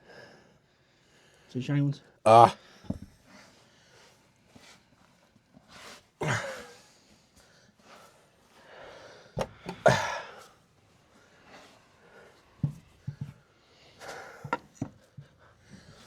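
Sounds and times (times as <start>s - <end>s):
truck wheel knocks and clunks: 2.9s - 3.2s, 12.6s - 13.4s, 14.4s - 15.0s.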